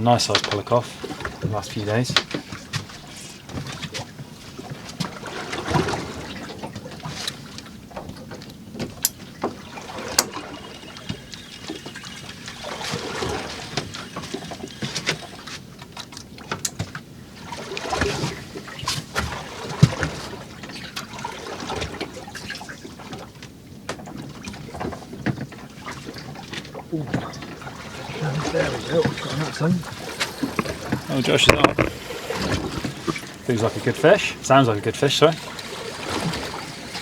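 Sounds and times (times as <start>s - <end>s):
water lapping against hull: 0.0s - 37.0s
sharp clicks and knocks: 29.9s - 33.4s.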